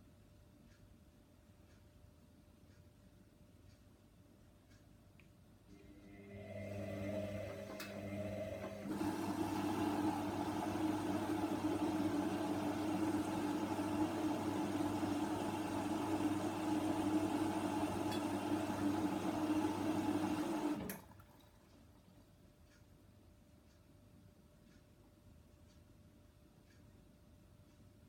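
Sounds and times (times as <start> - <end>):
inlet valve humming: 5.8 - 21.6
water rushing into machine: 6.0 - 21.7.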